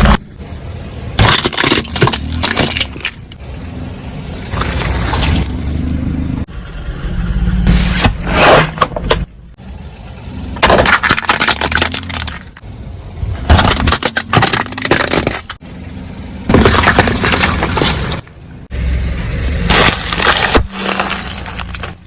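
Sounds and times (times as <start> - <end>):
car engine rumble: 0.0 - 22.0
objects crunching under car tyre: 1.2 - 3.6, 4.4 - 5.9, 7.7 - 9.3, 10.5 - 12.6, 13.2 - 15.6, 16.5 - 18.4, 19.5 - 22.0.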